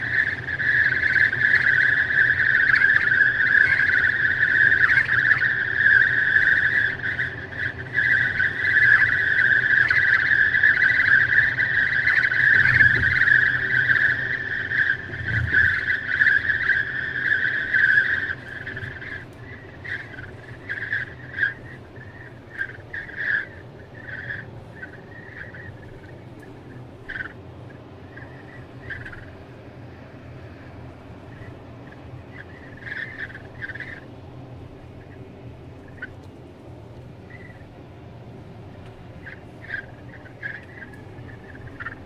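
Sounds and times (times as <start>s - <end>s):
high-pitched wind whistle: 0.0s - 42.0s
low road rumble: 0.0s - 42.0s.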